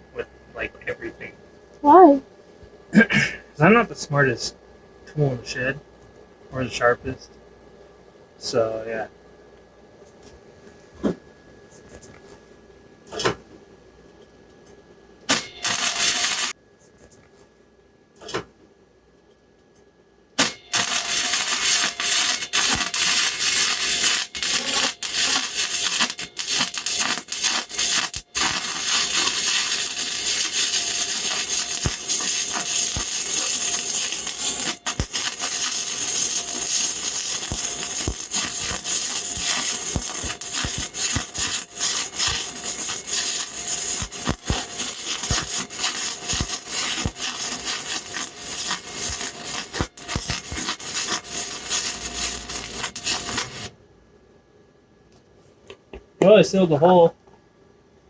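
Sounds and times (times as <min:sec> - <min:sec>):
wire welder crackling: 0:15.3 - 0:16.6, 0:20.4 - 0:53.7.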